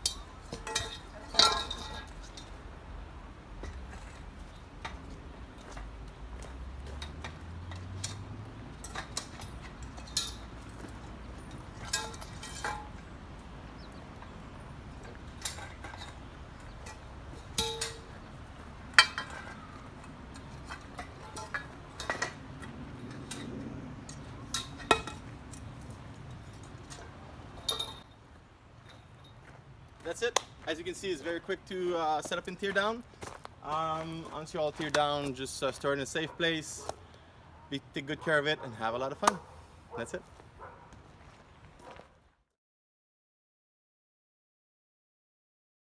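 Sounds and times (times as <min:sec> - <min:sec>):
metal parts knocking and clinking: 0:00.0 - 0:02.7, 0:06.9 - 0:13.0, 0:15.0 - 0:18.2, 0:18.9 - 0:28.1
low background noise: 0:00.0 - 0:42.2.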